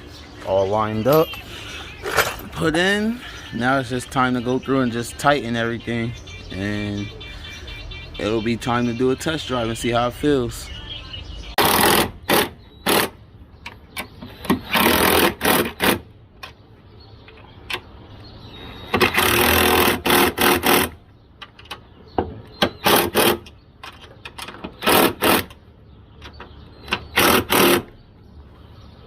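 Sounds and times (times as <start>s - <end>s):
impact wrench bursts: 14.2s - 16.1s, 18.9s - 21.0s, 22.6s - 23.5s, 24.8s - 25.6s, 26.9s - 27.9s.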